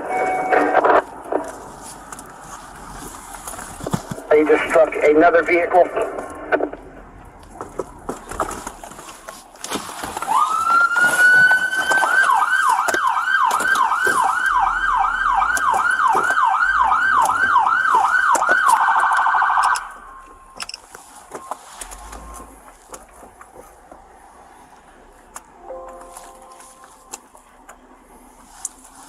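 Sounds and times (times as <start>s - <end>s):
police car siren: 0.0s - 1.5s, 10.2s - 20.6s.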